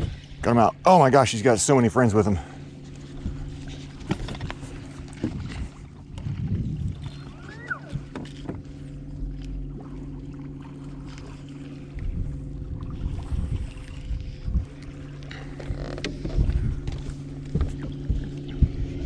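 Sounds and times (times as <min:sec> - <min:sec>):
electric trolling motor humming: 0:00.0 - 0:19.0
brief squeak: 0:07.1 - 0:08.4.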